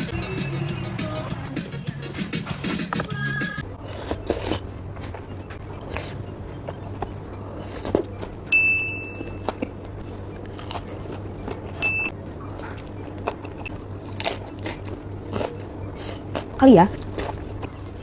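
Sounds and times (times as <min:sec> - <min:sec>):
crunching bites and chewing: 0:03.9 - 0:05.2, 0:09.1 - 0:18.0.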